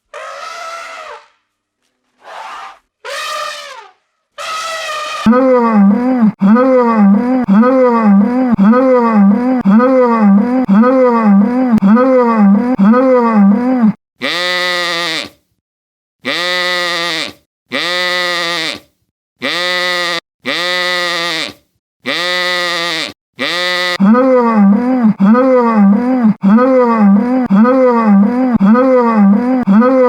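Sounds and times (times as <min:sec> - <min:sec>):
long even-pitched animal calls: 0:00.0 - 0:01.4, 0:02.2 - 0:15.2
wavering animal call: 0:00.1 - 0:01.4, 0:02.2 - 0:13.9.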